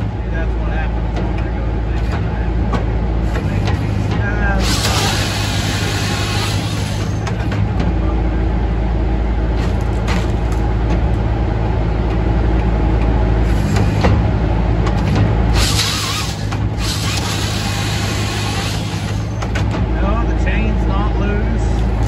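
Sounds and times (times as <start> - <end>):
firewood processor running: 2.0 - 22.0
hissing rasping sound: 4.6 - 7.4, 15.6 - 19.5.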